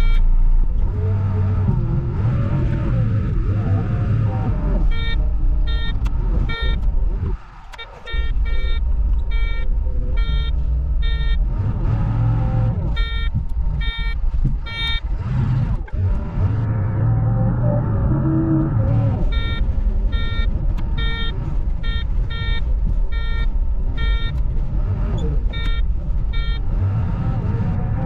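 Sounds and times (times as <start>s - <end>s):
reversing alarm beeping: 0.0s - 0.2s, 4.8s - 6.9s, 7.7s - 15.1s, 19.2s - 24.4s, 25.2s - 26.8s
loader engine rumbling: 0.0s - 28.0s.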